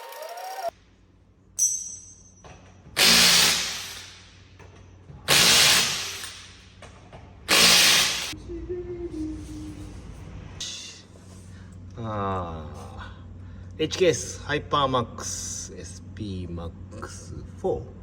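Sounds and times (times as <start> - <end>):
impact wrench bursts: 2.9 - 4.4, 5.3 - 6.7, 7.5 - 8.4.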